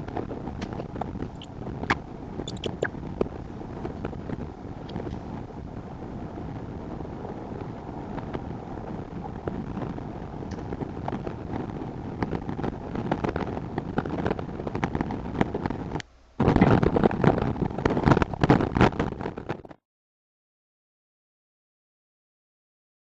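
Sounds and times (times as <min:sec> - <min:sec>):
crackling and popping: 0:00.0 - 0:05.6, 0:06.4 - 0:19.8
wind noise on microphone: 0:00.0 - 0:19.8.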